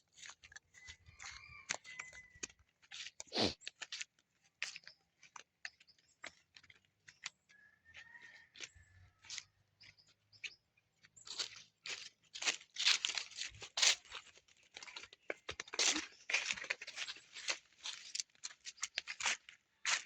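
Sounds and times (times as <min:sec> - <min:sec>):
pig crunching snacks: 0:00.1 - 0:04.8, 0:11.3 - 0:20.0.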